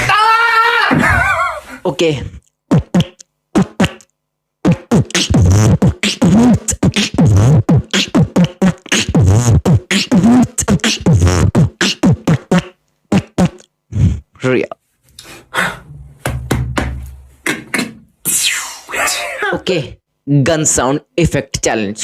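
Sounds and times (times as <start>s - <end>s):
person beatboxing: 2.2s - 14.3s.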